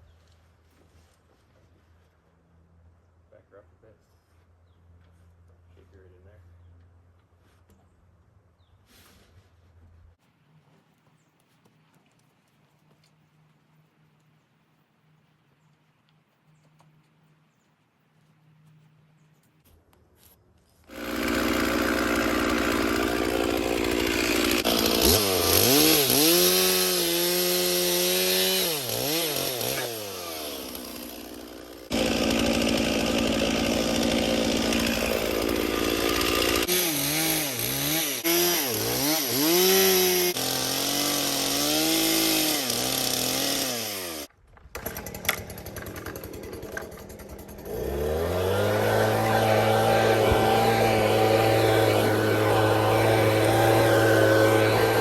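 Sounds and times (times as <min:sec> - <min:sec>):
chainsaw cutting wood: 0:20.9 - 0:55.0.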